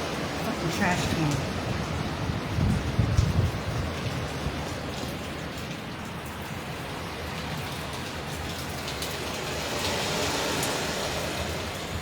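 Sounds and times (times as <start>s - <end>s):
low wind rumble: 0.0s - 12.0s
heavy rain hissing: 8.7s - 12.0s.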